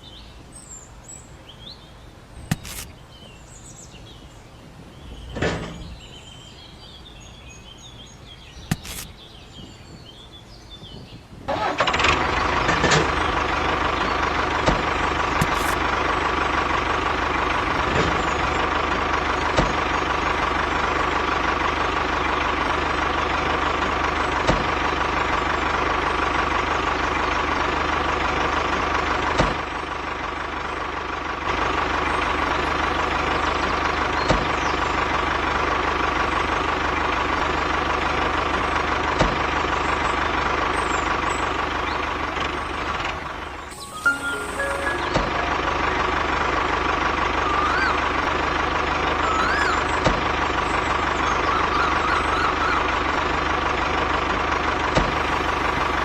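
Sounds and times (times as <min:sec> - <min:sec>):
small motor whining: 0:02.5 - 0:02.9, 0:08.7 - 0:09.1, 0:15.4 - 0:15.8.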